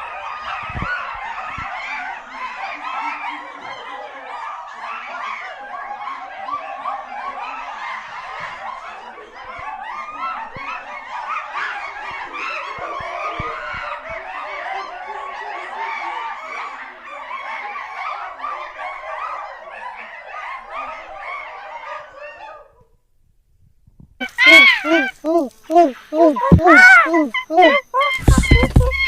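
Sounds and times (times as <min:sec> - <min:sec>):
chimpanzees calling: 0:24.2 - 0:29.0.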